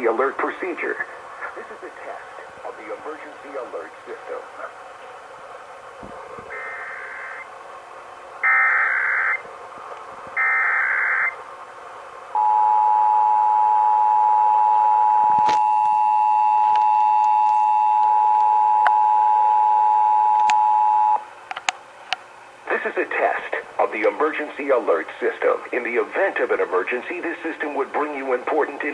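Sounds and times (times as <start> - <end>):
data burst tones: 6.5 - 7.5, 8.4 - 9.4.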